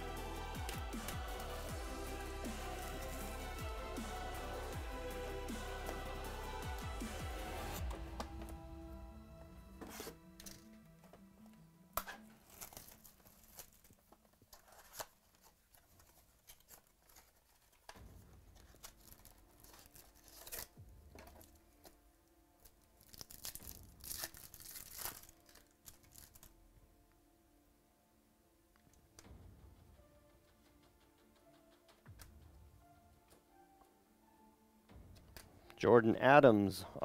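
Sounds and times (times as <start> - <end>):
card pack wrappers crinkling: 12.0 - 18.0, 18.6 - 22.0, 22.6 - 26.6.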